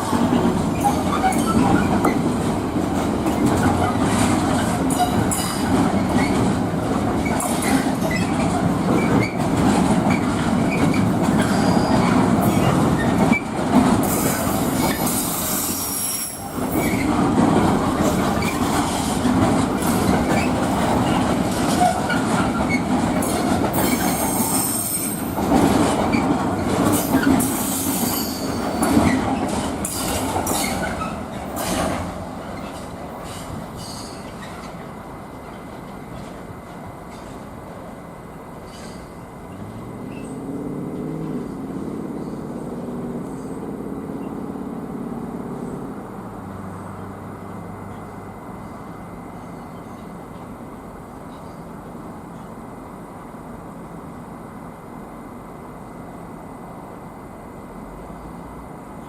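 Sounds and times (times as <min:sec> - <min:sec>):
train wheels clicking on rails: 0:00.0 - 0:46.0
freight train rumbling past: 0:00.0 - 0:59.0
high-pitched wheel squeal: 0:00.7 - 0:02.2, 0:10.7 - 0:13.5, 0:14.1 - 0:17.1, 0:23.8 - 0:25.3.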